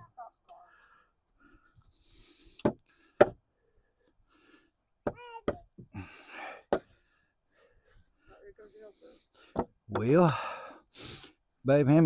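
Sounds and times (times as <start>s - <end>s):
hammer striking wood block: 2.6s - 3.4s, 9.5s - 10.1s.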